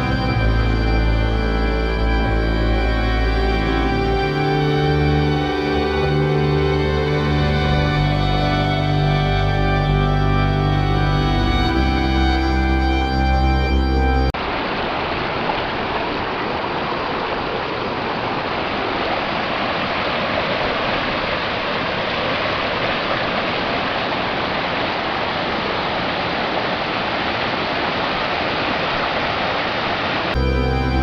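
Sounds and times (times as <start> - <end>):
background music: 0.0 - 14.4, 30.4 - 31.0
water rushing over rocks: 14.4 - 30.4.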